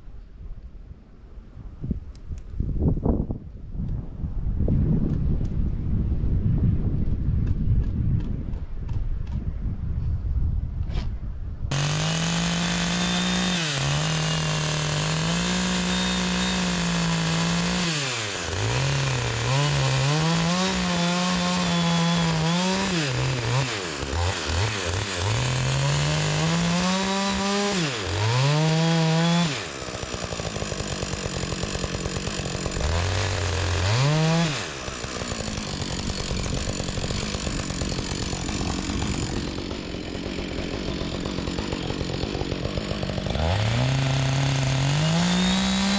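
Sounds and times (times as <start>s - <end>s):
chainsaw cutting log: 11.7s - 45.9s.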